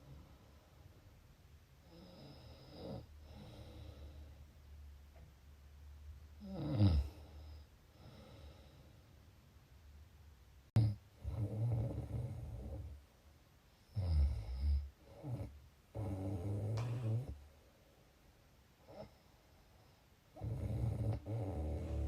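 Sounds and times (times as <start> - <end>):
soft breath: 1.9 - 4.6, 7.0 - 9.3
person snoring: 6.4 - 7.4, 20.4 - 22.0.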